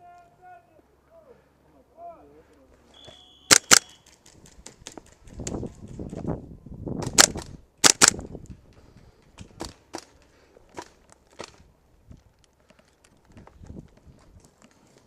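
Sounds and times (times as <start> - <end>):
airsoft guns firing: 3.5 - 3.9, 7.0 - 8.2.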